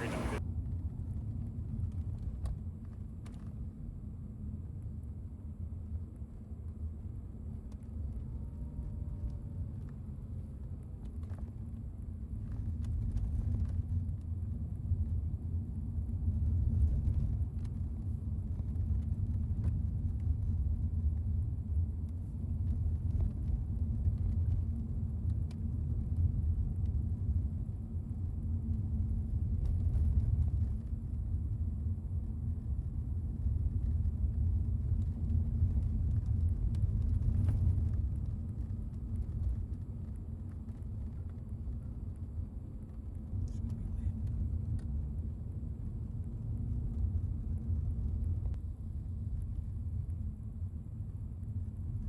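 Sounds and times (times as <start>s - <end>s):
car engine and road noise: 0.0s - 0.4s, 7.4s - 12.1s.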